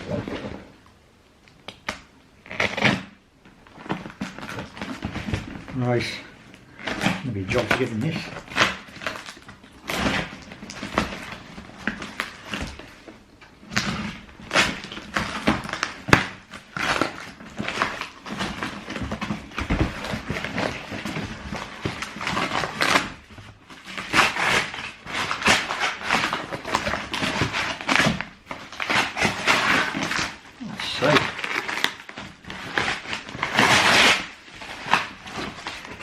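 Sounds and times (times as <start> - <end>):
cardboard box and paper torn open: 6.8 - 13.0, 13.6 - 36.0.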